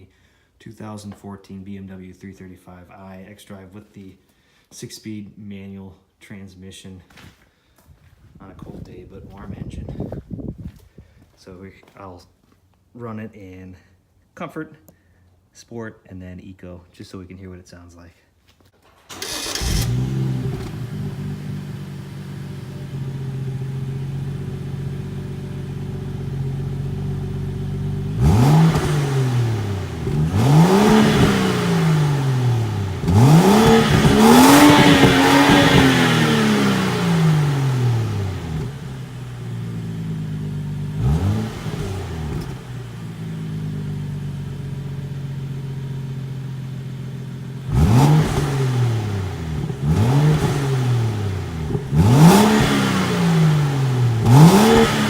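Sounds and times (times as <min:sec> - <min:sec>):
car engine idling and revving: 0:19.0 - 0:55.0.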